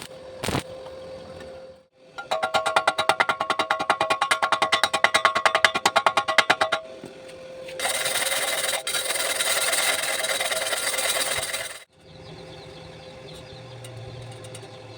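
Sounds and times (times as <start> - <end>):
welding arc buzzing and hissing: 0.0 - 0.8.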